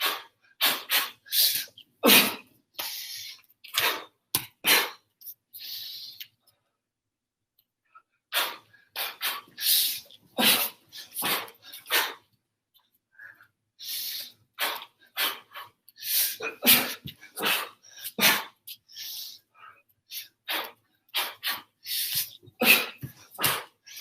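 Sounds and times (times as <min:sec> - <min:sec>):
sharp forceful exhalations: 0:08.3 - 0:12.2.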